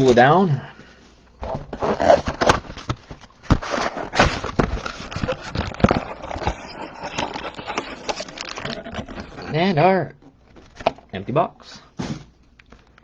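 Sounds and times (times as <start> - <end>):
cardboard crackling and tearing: 1.8 - 9.8.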